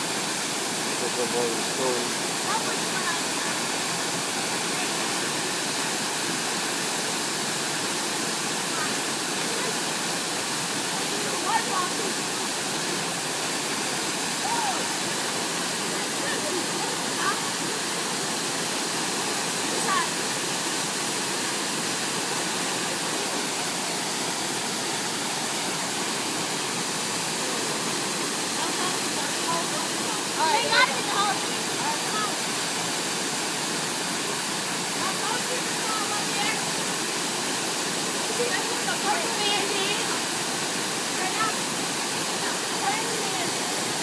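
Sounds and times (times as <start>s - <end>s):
waterfall roaring: 0.0s - 44.0s.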